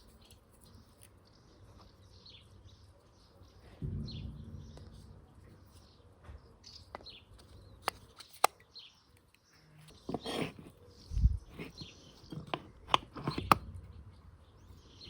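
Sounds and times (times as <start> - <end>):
small birds chirping: 0.0 - 4.8, 6.6 - 15.0
low hum: 3.8 - 7.7, 13.4 - 15.0.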